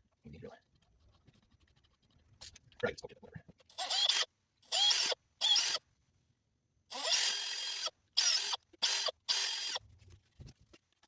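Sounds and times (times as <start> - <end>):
power drill motor whine: 7.0 - 9.8.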